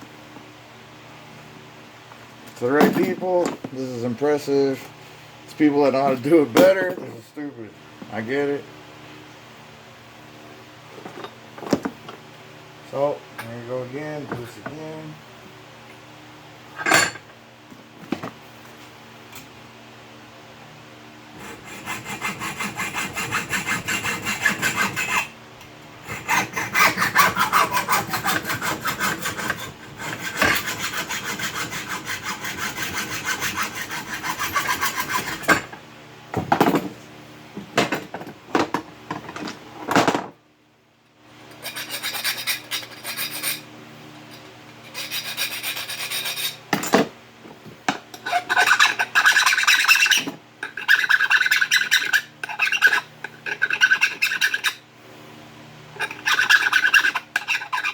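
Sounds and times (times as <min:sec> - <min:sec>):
hand tool scraping metal: 0:21.4 - 0:25.3, 0:26.0 - 0:35.8, 0:41.5 - 0:43.7, 0:44.8 - 0:46.6, 0:48.2 - 0:54.8, 0:56.0 - 0:57.9.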